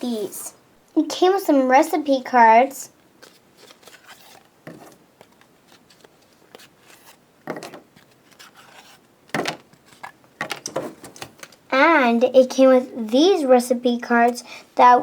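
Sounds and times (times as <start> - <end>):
cardboard cards shuffled: 3.2 - 11.6.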